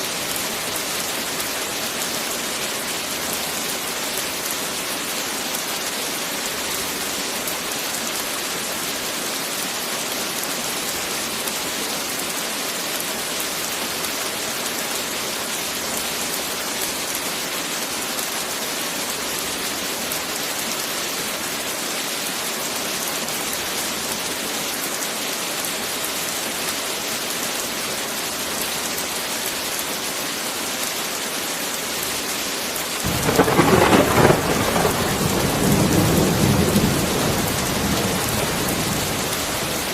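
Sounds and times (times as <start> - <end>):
heavy rain falling: 0.0 - 39.9
thunder rolling: 33.0 - 39.9.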